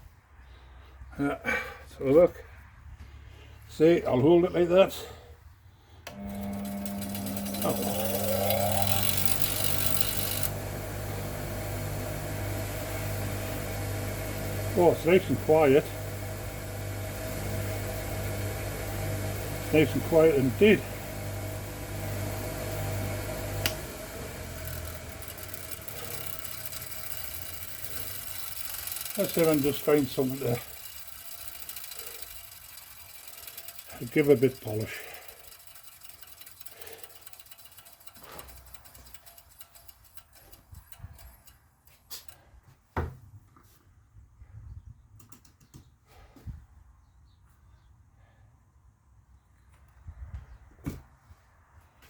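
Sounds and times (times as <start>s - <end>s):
electric motor humming: 6.1s - 41.4s.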